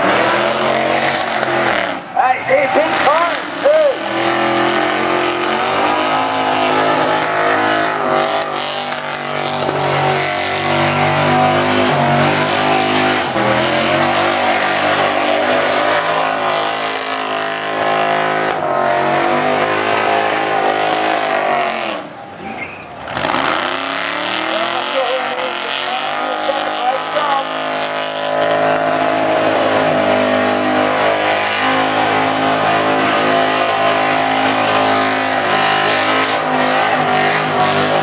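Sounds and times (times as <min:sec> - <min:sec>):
car engine at high revs: 0:00.0 - 0:38.0.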